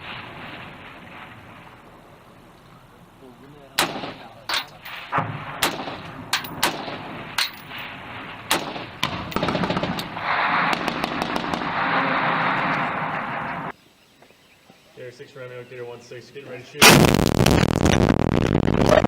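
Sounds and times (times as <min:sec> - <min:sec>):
single gunshots: 0:03.8 - 0:13.7, 0:16.8 - 0:18.0.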